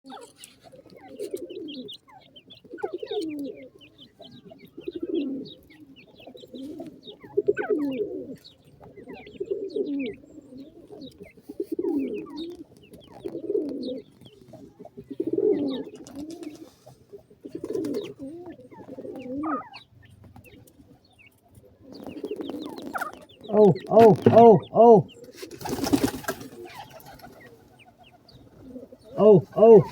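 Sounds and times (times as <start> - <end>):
bird cooing: 0.1 - 29.9.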